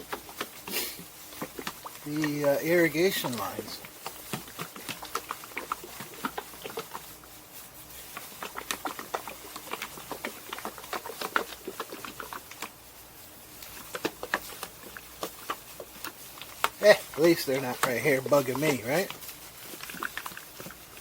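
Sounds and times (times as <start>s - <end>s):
stir stick tapping container: 1.3s - 7.3s, 13.5s - 21.0s.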